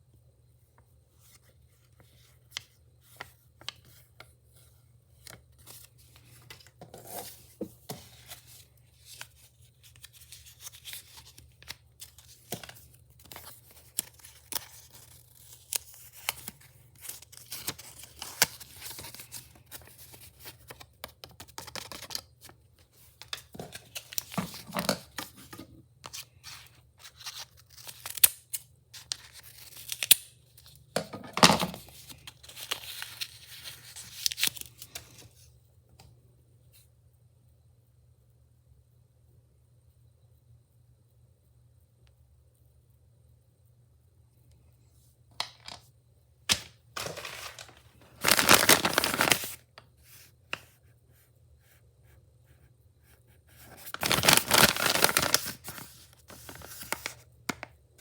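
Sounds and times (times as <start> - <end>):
packaging tearing and crinkling: 27.1 - 28.4, 46.5 - 49.6, 53.8 - 57.1
faint low hum: 28.6 - 54.3.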